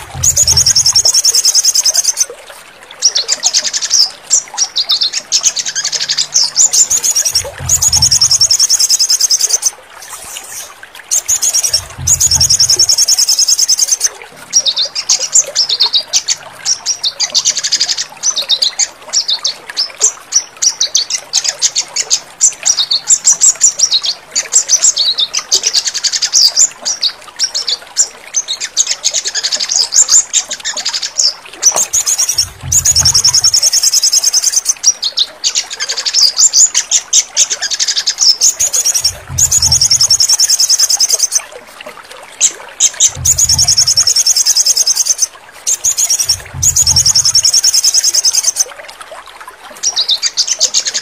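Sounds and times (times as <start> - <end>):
low rumbles: 0.0 - 1.1, 7.3 - 8.5, 11.6 - 12.8, 32.3 - 33.5, 39.0 - 40.2, 43.1 - 44.1, 46.2 - 47.4
bird trilling and chirping: 0.0 - 2.3, 4.9 - 14.1, 31.7 - 34.8, 38.0 - 41.4, 42.9 - 48.6.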